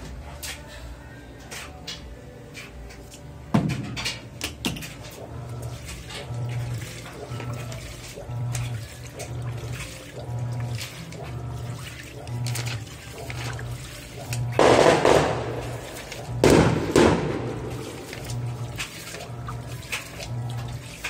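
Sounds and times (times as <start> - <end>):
washing machine motor humming: 0.0 - 21.0
water and clothes sloshing: 4.5 - 21.0.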